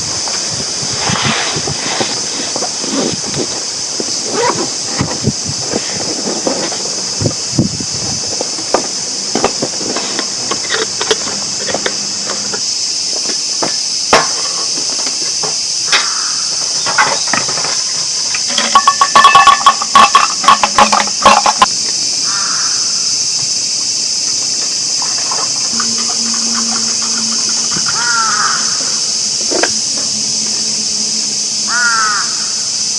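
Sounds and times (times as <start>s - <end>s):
insects droning: 0.0s - 32.9s
knocks and clatter: 13.2s - 16.1s, 16.7s - 21.9s
rattling clicks: 16.7s - 22.0s.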